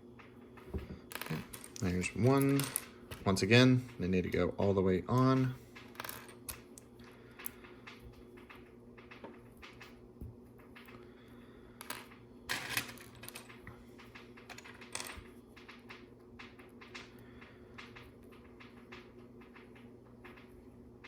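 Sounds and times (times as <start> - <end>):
plastic pieces clicking and clattering: 1.1 - 3.5, 11.8 - 17.2.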